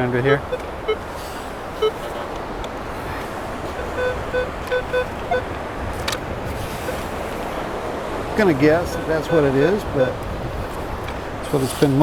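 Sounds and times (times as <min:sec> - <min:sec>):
surf: 0:00.0 - 0:12.0
wind: 0:00.0 - 0:12.0
metal detector short beeps: 0:01.8 - 0:02.1, 0:03.8 - 0:05.5.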